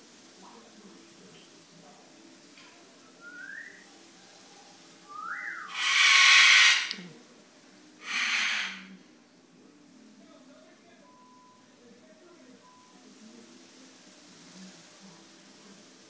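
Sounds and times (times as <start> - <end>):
hissy rushes of noise: 0.0 - 7.0, 7.9 - 9.0.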